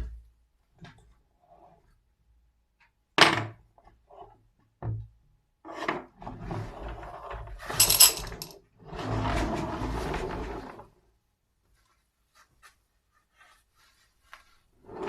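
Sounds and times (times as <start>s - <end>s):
marbles rolling on wooden track: 7.7s - 8.5s.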